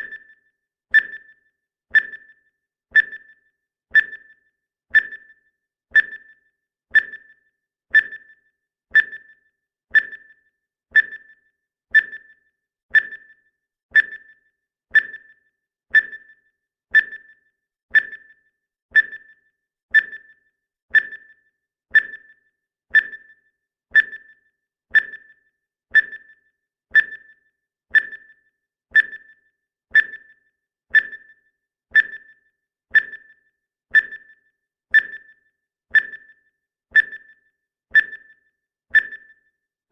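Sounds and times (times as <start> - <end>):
high-pitched clock ticking: 0.0 - 39.6.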